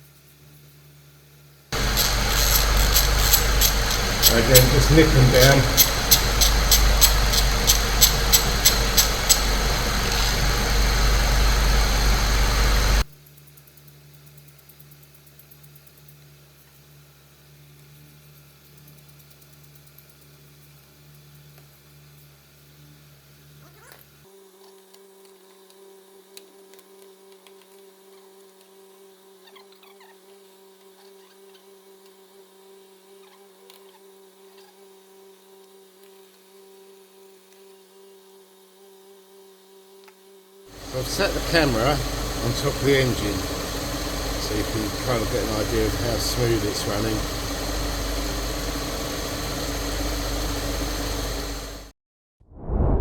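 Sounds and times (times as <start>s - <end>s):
hand ratchet clicking: 1.8s - 11.8s
car engine idling: 1.8s - 13.1s, 40.7s - 51.9s
faint low hum: 1.8s - 13.1s, 40.7s - 51.9s.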